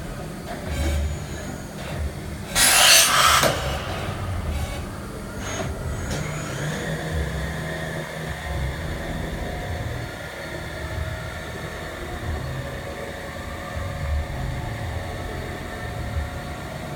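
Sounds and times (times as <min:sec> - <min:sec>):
loud hiss of air: 0:02.6 - 0:05.8.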